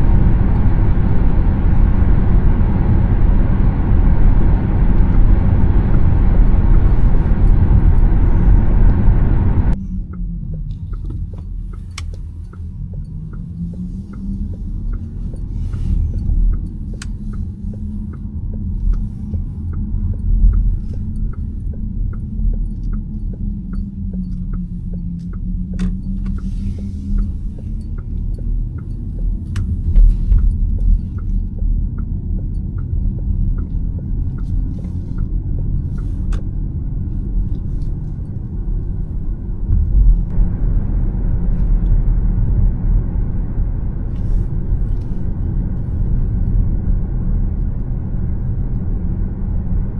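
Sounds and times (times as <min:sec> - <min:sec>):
tyre and road rumble: 0:00.0 - 0:49.9
light ticking: 0:09.7 - 0:40.4.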